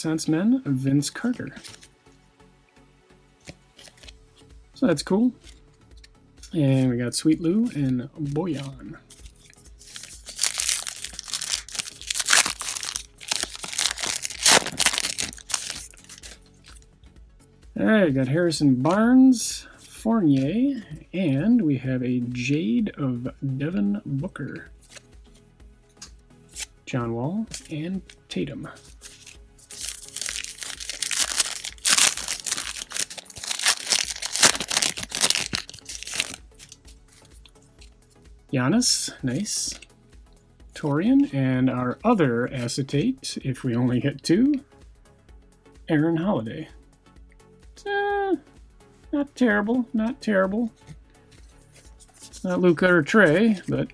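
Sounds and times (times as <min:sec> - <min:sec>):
plastic wrapper crinkling: 0:08.6 - 0:16.8, 0:28.9 - 0:37.5.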